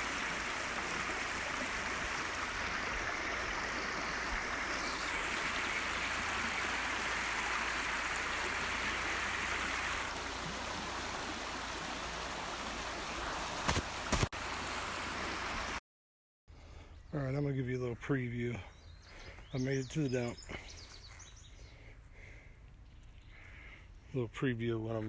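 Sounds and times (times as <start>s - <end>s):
creek water running: 0.0s - 15.8s.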